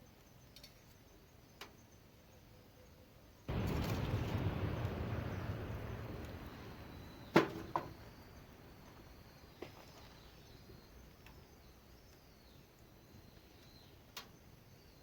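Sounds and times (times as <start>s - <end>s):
rushing noise: 3.5s - 9.3s
small click: 13.6s - 14.4s.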